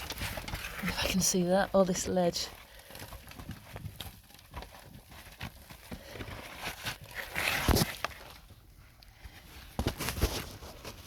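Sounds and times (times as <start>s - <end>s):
knocks and scrapes of caver moving: 0.0s - 8.5s
scraping rustle: 0.0s - 11.0s.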